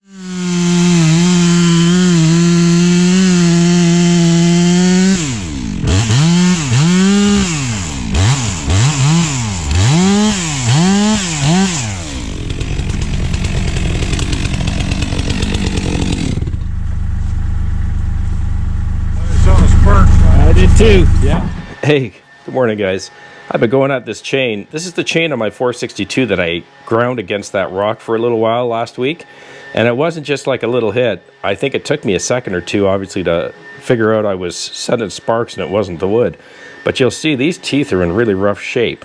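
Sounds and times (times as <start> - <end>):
chainsaw revving: 0.0 - 21.8.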